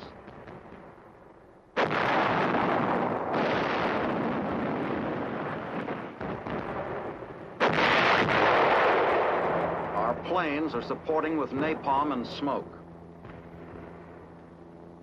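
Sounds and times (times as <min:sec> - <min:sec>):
heavy explosion blasts: 0:01.8 - 0:10.6.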